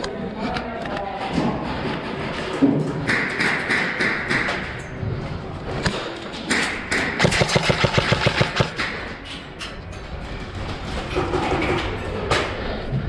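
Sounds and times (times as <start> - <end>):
airsoft gun firing bursts: 7.0 - 8.8.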